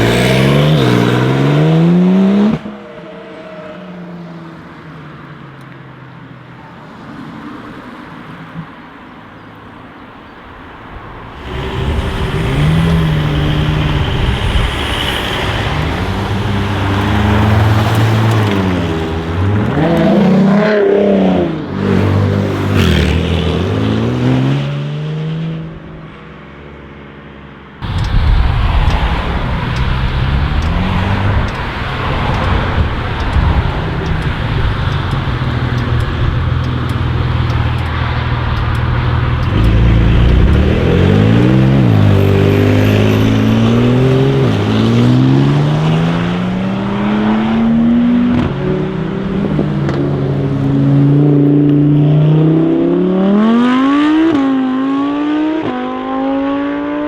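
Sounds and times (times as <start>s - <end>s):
car engine revving and accelerating: 0.0s - 2.8s, 10.9s - 25.8s, 27.8s - 57.0s
loud rushing noise: 10.7s - 21.1s, 27.8s - 47.9s.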